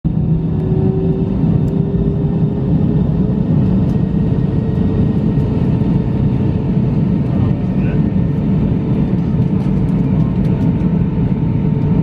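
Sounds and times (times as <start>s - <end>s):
thin engine whine: 0.1s - 7.2s
aircraft cabin engine rumble: 0.1s - 12.0s.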